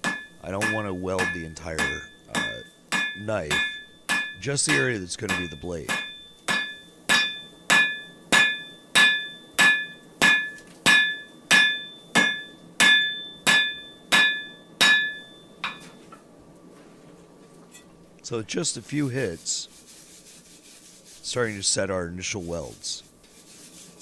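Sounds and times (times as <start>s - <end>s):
hammer striking hot metal on anvil: 0.0s - 16.0s
faint background hiss: 0.0s - 24.0s.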